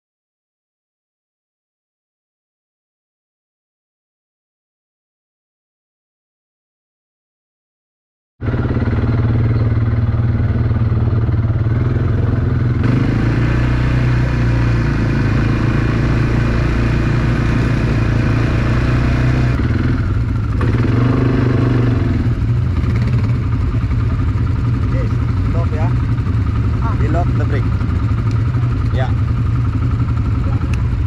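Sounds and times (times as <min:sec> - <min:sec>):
small vehicle engine running: 0:08.4 - 0:31.0.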